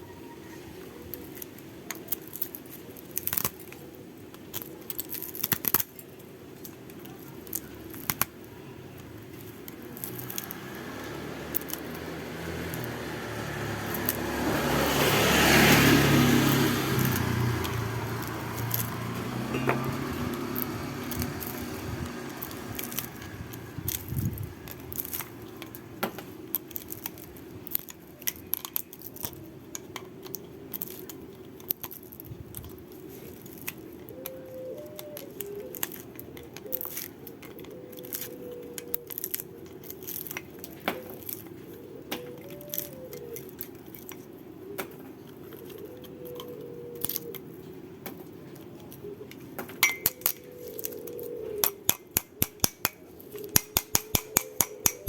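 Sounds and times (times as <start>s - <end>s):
metal tools clinking and rattling: 49.8s - 50.3s.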